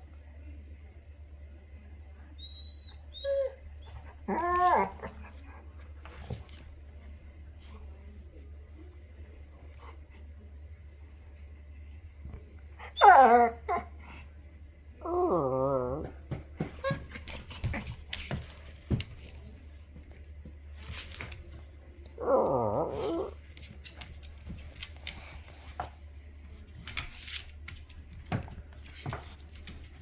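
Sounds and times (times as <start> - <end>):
dog whining groans: 2.7 - 5.3, 12.8 - 13.8, 15.0 - 16.1, 22.2 - 23.4.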